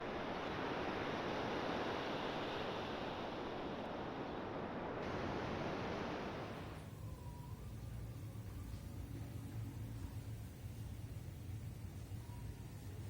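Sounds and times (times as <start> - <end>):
rushing nature ambience: 0.0 - 6.8.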